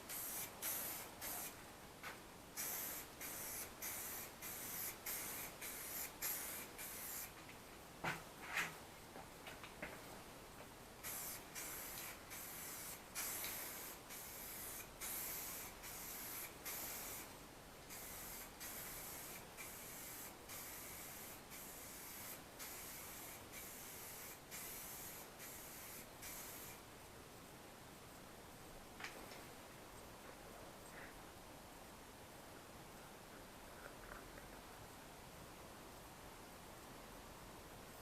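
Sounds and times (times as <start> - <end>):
spray paint can hissing: 0.0 - 1.6, 2.6 - 7.4, 11.0 - 17.3, 17.9 - 26.8.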